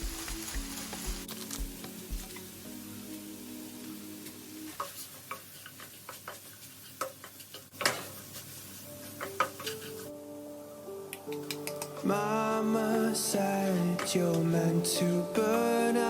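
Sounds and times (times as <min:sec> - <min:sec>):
food sizzling in a frying pan: 0:00.0 - 0:10.2.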